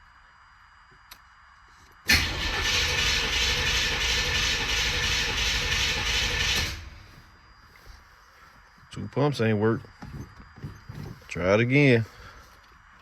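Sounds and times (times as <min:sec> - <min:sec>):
starter cranking engine: 0:02.1 - 0:07.2.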